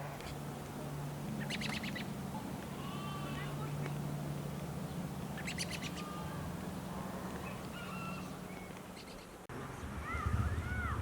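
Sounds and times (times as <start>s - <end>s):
small birds chirping: 1.3s - 9.4s.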